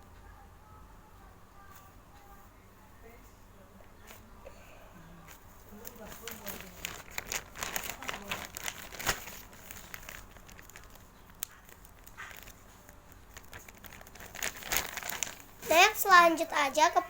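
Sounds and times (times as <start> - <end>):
toy rustling and crinkling: 5.3 - 17.0.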